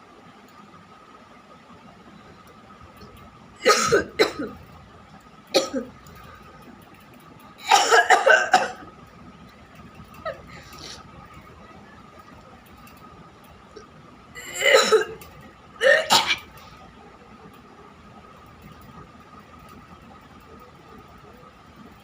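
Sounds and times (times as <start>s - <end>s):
person coughing: 3.6s - 4.6s, 5.6s - 5.9s, 7.6s - 8.8s, 14.4s - 15.2s.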